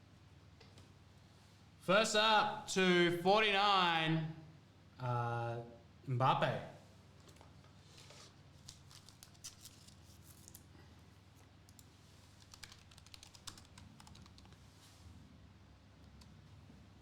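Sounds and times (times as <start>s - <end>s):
low steady hum: 0.0s - 7.7s
computer keyboard typing: 12.4s - 14.6s.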